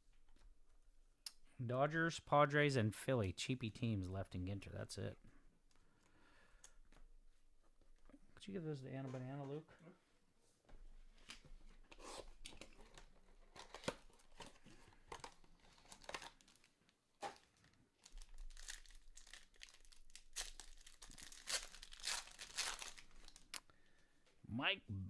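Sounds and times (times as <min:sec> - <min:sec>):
cards rustling: 0:12.2 - 0:23.7
foil wrapper ripping and crinkling: 0:13.6 - 0:16.7, 0:17.3 - 0:23.6.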